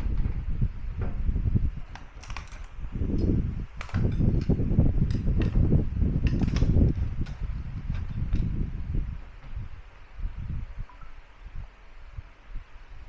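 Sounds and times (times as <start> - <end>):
tools clicking and knocking: 1.8 - 8.6.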